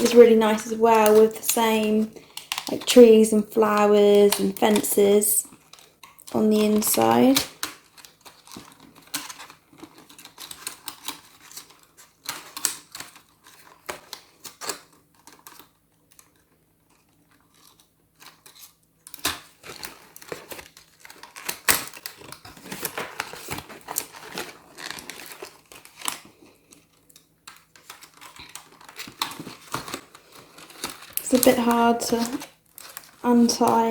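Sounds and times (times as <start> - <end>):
packaging crinkling: 3.8 - 33.9.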